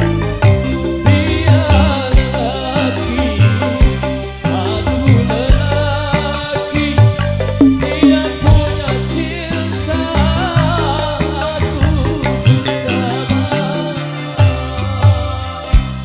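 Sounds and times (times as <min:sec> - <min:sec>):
heavy bass-drum thumps: 0:00.0 - 0:13.7, 0:14.4 - 0:16.0
up-tempo music over pa: 0:00.0 - 0:16.0.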